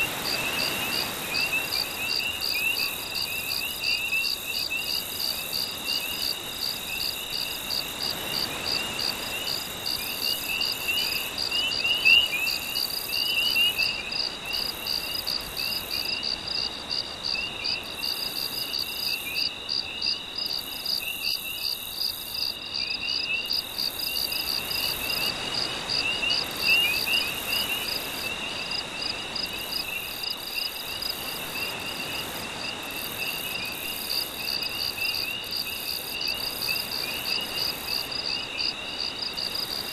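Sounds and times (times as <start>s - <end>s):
frogs calling: 0.0s - 16.4s
crickets chirping: 0.0s - 39.9s.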